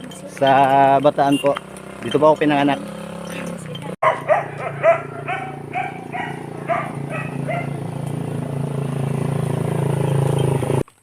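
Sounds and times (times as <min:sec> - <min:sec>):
dog barking: 0:04.0 - 0:07.9.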